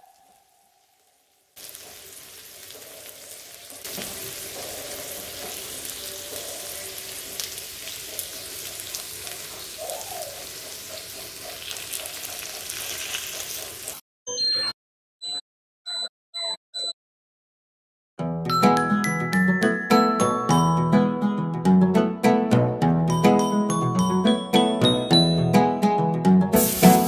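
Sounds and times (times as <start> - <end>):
chicken sizzling in oil: 0.0 - 14.0, 26.6 - 27.0.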